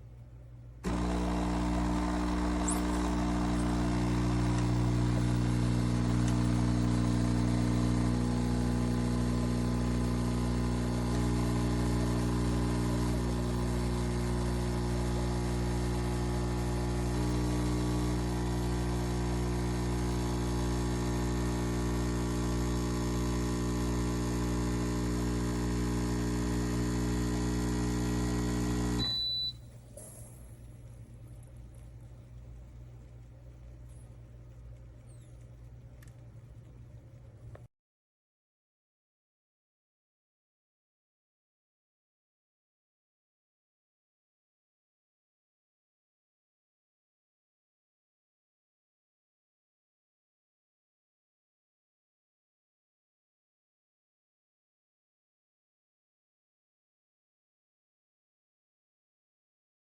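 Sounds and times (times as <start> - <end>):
espresso machine pump buzzing: 0.8 - 31.0.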